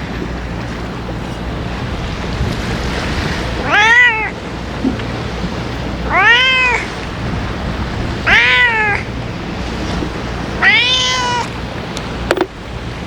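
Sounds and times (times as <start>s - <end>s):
cat meowing: 3.6s - 4.4s, 6.1s - 6.9s, 8.2s - 9.1s, 10.6s - 11.5s.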